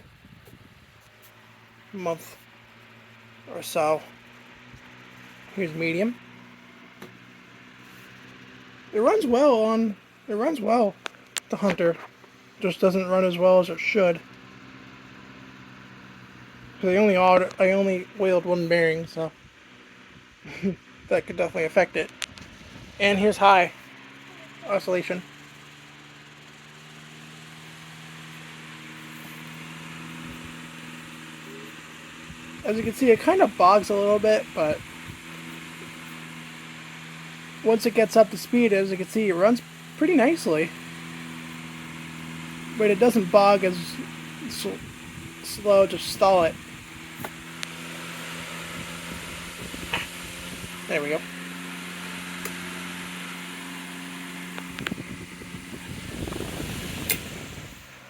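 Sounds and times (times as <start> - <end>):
electric fan running: 0.0 - 58.0.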